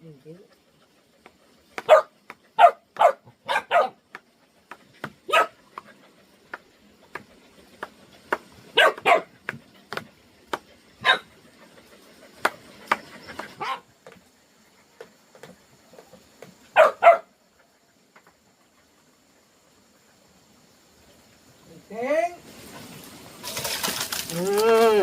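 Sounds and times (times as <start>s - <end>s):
dog barking: 1.8s - 4.0s, 5.3s - 5.6s, 8.8s - 9.3s, 11.0s - 11.3s, 13.6s - 13.9s, 16.7s - 17.3s.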